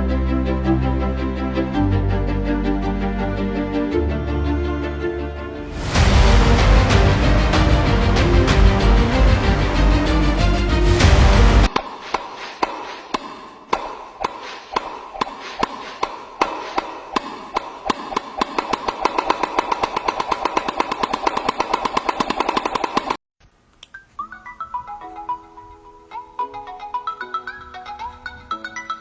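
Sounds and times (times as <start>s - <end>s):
electronic ringtone tune: 24.2s - 29.0s.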